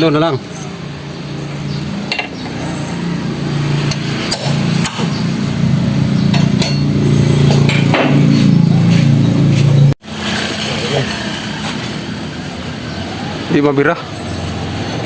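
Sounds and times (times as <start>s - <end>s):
metal tools clinking on metal: 0.3s - 2.5s, 6.3s - 8.4s.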